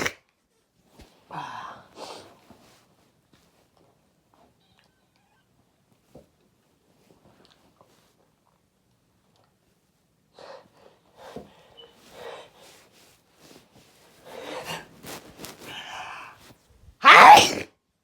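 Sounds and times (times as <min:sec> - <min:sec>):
person sniffing and gasping: 0:14.3 - 0:17.7.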